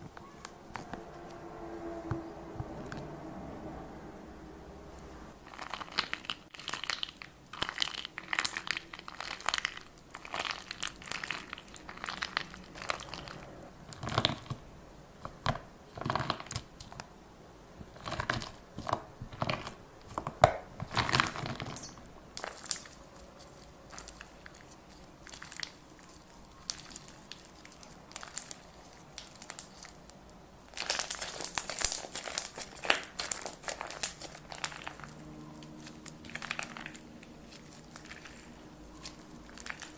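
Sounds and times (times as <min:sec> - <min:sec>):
crunchy slime crackling: 0:05.4 - 0:14.6, 0:15.2 - 0:17.1, 0:17.8 - 0:39.9.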